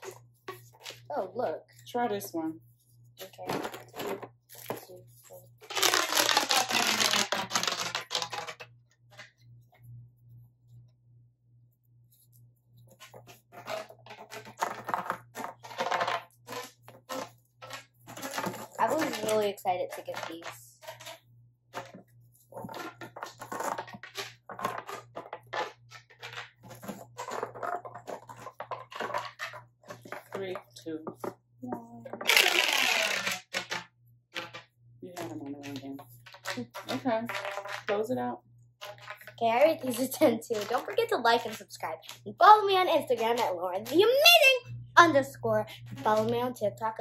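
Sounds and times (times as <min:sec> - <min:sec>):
plastic fidget toys clattering: 0:05.6 - 0:09.3, 0:13.0 - 0:21.2, 0:22.6 - 0:33.8, 0:38.8 - 0:44.5
plastic fidget toys clicking: 0:32.1 - 0:33.8.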